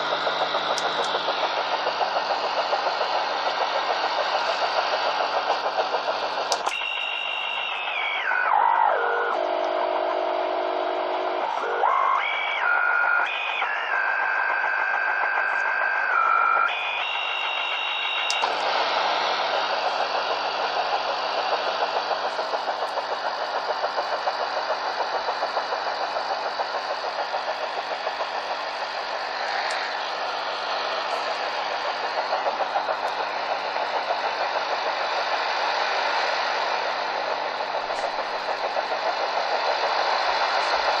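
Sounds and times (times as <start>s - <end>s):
rapid radio tapping pulse: 0.0s - 41.0s
radio hiss: 12.6s - 41.0s.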